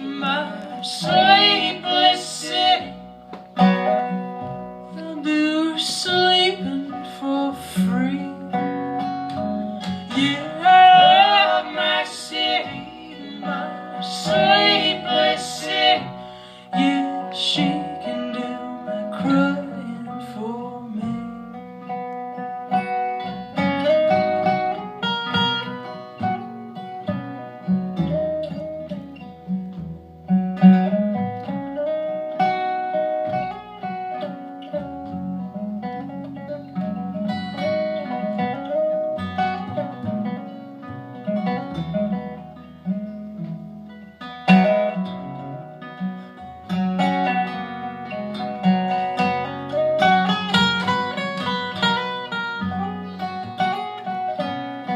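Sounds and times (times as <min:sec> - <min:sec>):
acoustic guitar: 0:00.0 - 0:54.9.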